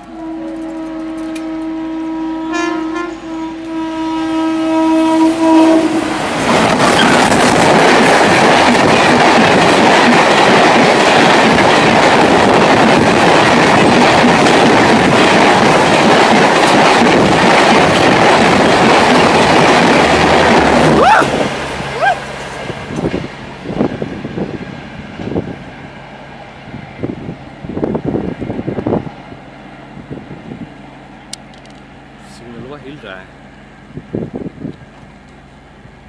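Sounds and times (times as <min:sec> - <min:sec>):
train horn: 0:00.0 - 0:06.3
express train passing at speed: 0:00.0 - 0:36.0.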